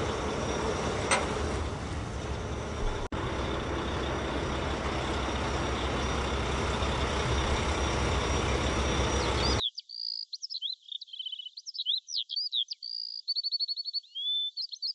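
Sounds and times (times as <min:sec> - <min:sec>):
rumbling engine noise: 0:00.0 - 0:09.6
bird chirps and whistles: 0:09.4 - 0:14.9.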